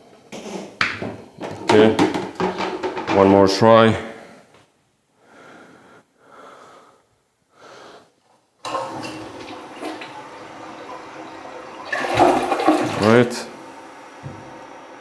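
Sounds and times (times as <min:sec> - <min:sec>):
toilet flushing: 0:01.0 - 0:03.6, 0:08.6 - 0:15.0
toilet plunger suction strokes: 0:01.4 - 0:03.4, 0:08.6 - 0:15.0.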